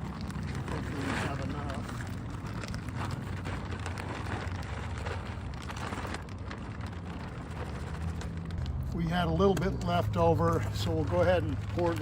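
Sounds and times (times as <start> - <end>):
gravelly asphalt pouring: 0.0 - 12.0.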